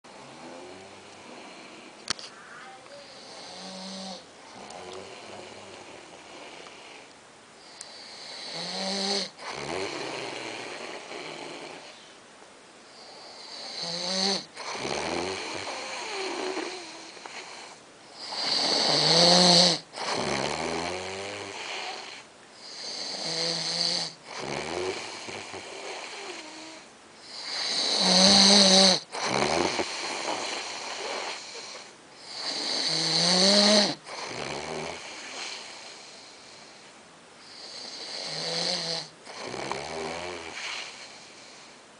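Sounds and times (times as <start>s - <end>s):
heavy snoring: 0.1s - 2.0s, 3.0s - 12.0s, 13.0s - 36.8s, 37.4s - 41.8s
quiet breathing: 0.1s - 12.2s, 15.4s - 19.0s, 29.0s - 32.9s, 33.9s - 38.5s, 40.3s - 41.9s.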